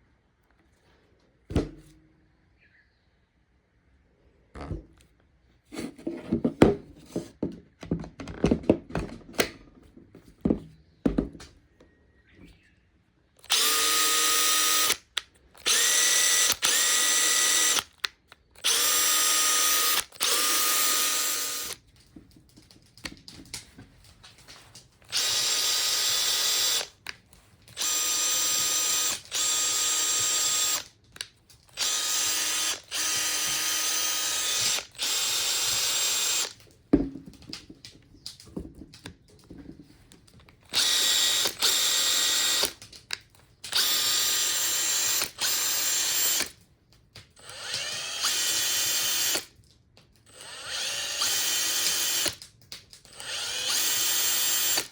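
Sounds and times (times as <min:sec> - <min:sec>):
impact driver motor whine: 0:13.4 - 0:18.0, 0:18.6 - 0:21.8, 0:25.1 - 0:26.9, 0:27.7 - 0:30.9, 0:31.8 - 0:36.6, 0:40.7 - 0:42.8, 0:43.7 - 0:46.5, 0:47.4 - 0:49.5, 0:50.3 - 0:52.4, 0:53.1 - 0:54.9
tool handling clicks and clatter: 0:13.4 - 0:43.9.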